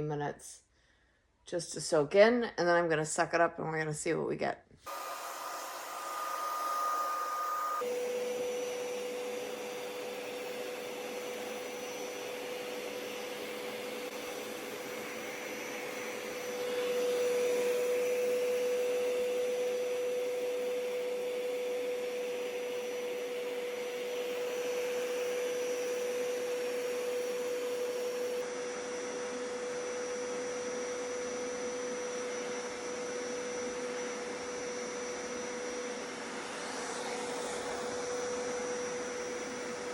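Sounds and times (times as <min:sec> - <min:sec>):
carpet cleaner suction whine: 0:04.9 - 0:39.9.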